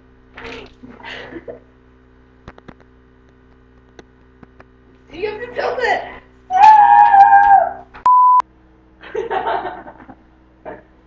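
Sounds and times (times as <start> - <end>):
steady electrical hum: 0.0 - 11.0
person crying out: 6.5 - 7.8.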